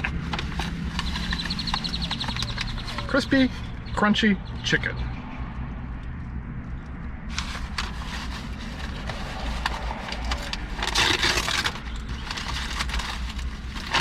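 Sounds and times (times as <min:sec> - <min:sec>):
paper wrapper rustling: 0:00.0 - 0:03.7, 0:07.3 - 0:14.0
passing traffic rumble: 0:00.0 - 0:14.0.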